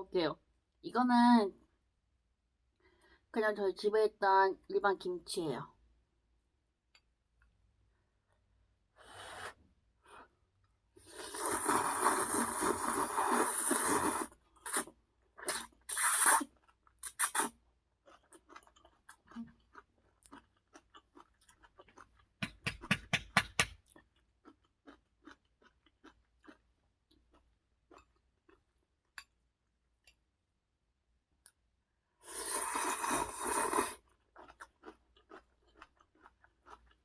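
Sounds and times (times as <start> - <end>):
crunchy chewing: 16.3 - 22.4, 23.9 - 28.6, 32.4 - 37.0.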